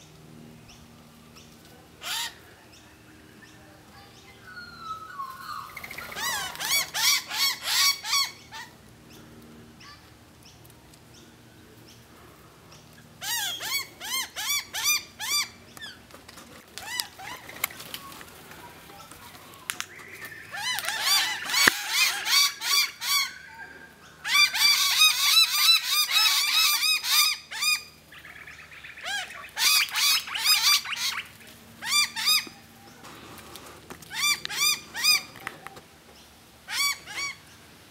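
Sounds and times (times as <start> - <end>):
birds squawking harshly: 1.4 - 2.5, 4.2 - 10.1, 12.6 - 16.0, 19.0 - 35.5, 36.6 - 37.7.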